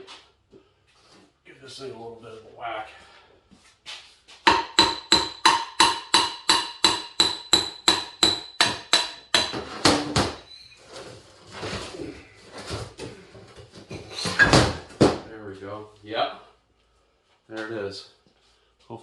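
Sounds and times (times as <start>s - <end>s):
hammer striking steel cylinder: 4.5s - 9.6s.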